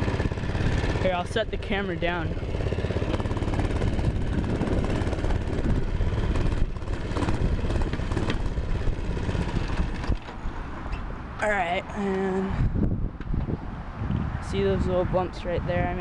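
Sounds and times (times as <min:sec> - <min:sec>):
mini bike engine running: 0:00.0 - 0:10.5.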